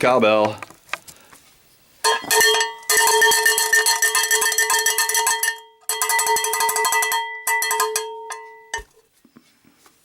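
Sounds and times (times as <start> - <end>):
cowbell struck rapidly: 2.1 - 8.7.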